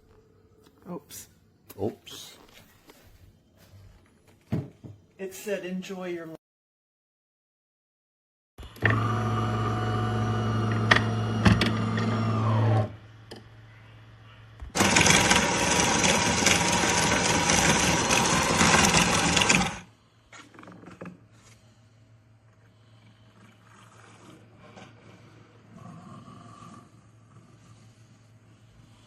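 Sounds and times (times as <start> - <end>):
noisy whir: 8.6 - 23.0
espresso machine humming: 8.7 - 13.0, 14.7 - 19.9.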